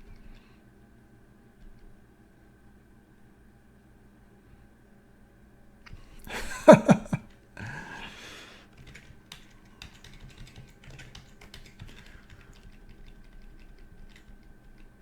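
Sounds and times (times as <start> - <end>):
computer keyboard and mouse clicks: 8.6 - 15.0.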